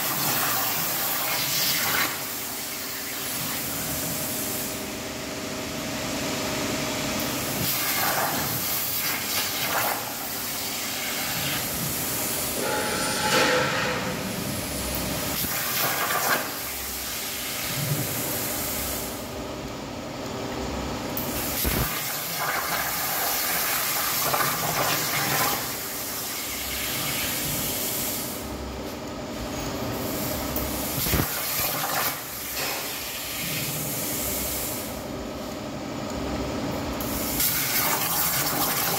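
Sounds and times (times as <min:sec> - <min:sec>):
plasma torch hissing: 0:07.4 - 0:19.2, 0:21.2 - 0:28.4, 0:29.9 - 0:35.0, 0:37.0 - 0:38.9.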